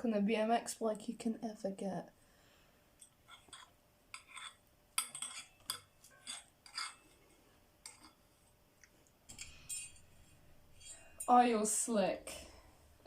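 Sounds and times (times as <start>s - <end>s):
bike parts clinking and rattling: 9.3s - 10.1s.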